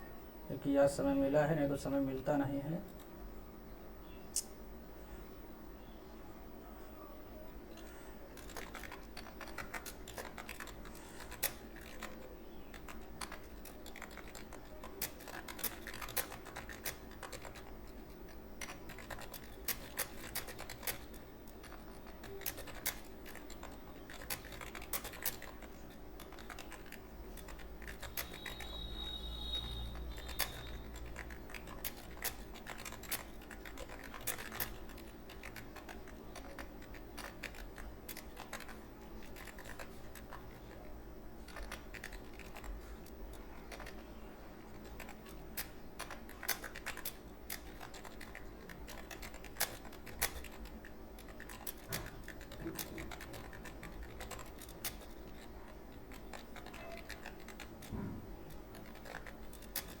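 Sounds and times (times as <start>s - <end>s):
typing on a computer keyboard: 7.7s - 60.0s.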